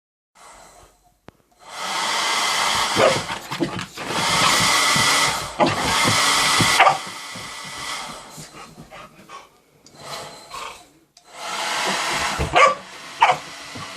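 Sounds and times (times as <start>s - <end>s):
hair dryer blowing: 1.6s - 8.6s, 11.2s - 13.9s
dog barking: 3.0s - 3.3s, 6.7s - 7.0s, 12.5s - 13.5s.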